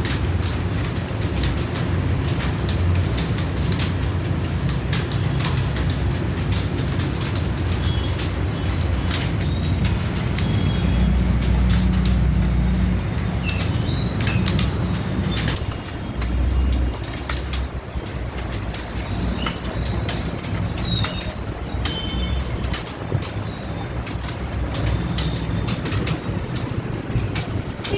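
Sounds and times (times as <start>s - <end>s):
keyboard typing clatter: 0.0s - 27.9s
low steady rumble: 8.5s - 27.9s.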